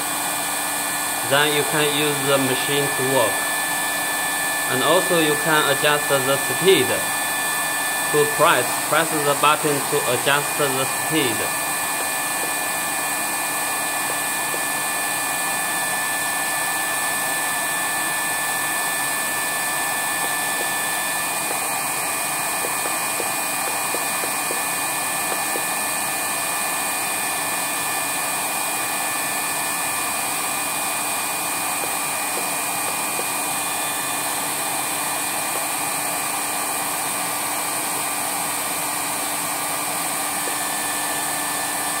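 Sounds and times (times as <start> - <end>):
motors whining: 20.0 - 25.8.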